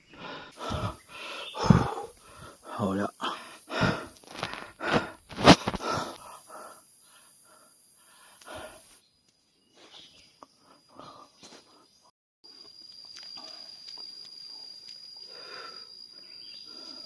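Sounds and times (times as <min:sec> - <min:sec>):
faint high insect-like tone: 0:00.0 - 0:04.8, 0:05.5 - 0:17.0
man breathing hard: 0:00.0 - 0:09.0, 0:09.9 - 0:12.0, 0:15.2 - 0:17.0.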